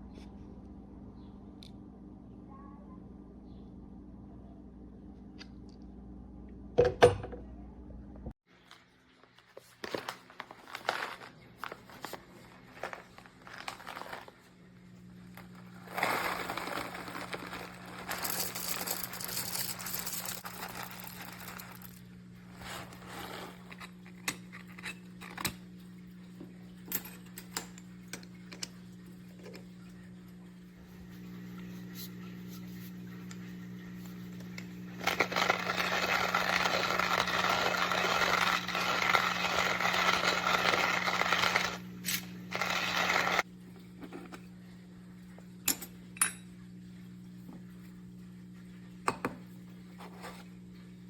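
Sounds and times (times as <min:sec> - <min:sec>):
steady low hum: 0:14.3 - 0:51.0.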